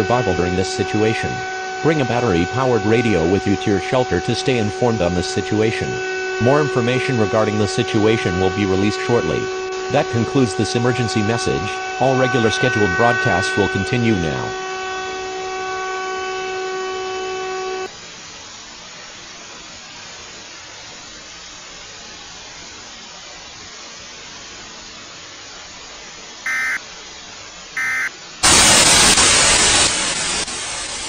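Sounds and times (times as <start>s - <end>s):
buzzing alert tone: 0.0s - 17.9s, 26.5s - 26.8s, 27.8s - 31.0s
loud static burst: 0.0s - 31.0s
low steady hiss: 17.9s - 31.0s
high digital data bursts: 26.4s - 26.8s, 27.8s - 31.0s.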